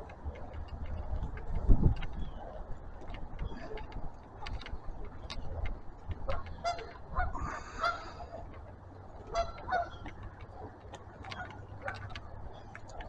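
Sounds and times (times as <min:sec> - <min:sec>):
geese honking: 0:06.6 - 0:08.3, 0:09.3 - 0:10.1.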